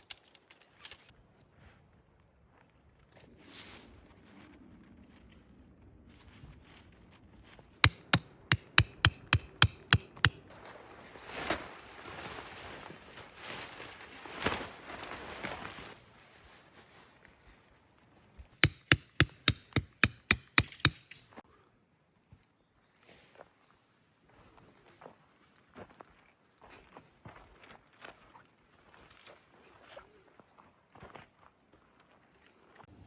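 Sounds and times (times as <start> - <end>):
tent pegs being hammered: 7.8 - 10.5, 18.6 - 21.3
rustling: 10.4 - 17.6.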